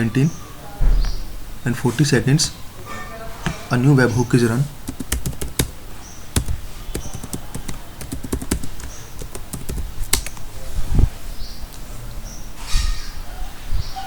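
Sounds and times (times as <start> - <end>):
computer keys clicking: 4.8 - 5.8, 6.4 - 10.5.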